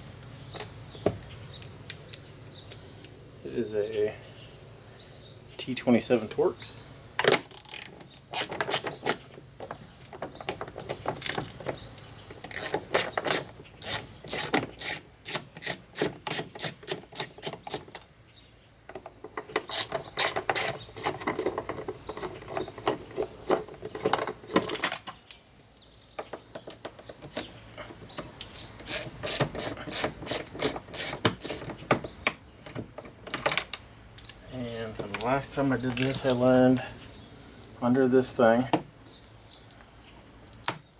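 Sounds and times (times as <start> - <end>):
hand ratchet clicking: 7.4 - 9.2, 12.3 - 17.9, 19.7 - 21.6, 28.8 - 31.7.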